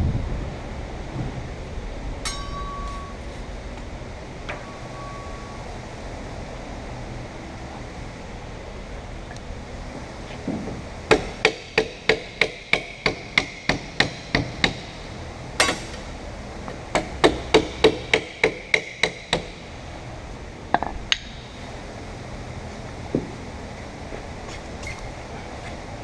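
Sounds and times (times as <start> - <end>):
hammer blows with ring: 2.2 - 3.5, 4.4 - 5.8, 15.6 - 16.1.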